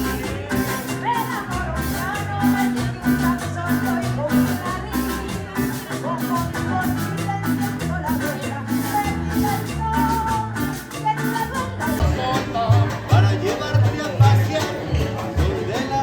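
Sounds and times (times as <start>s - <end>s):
latin band music: 0.0s - 16.0s.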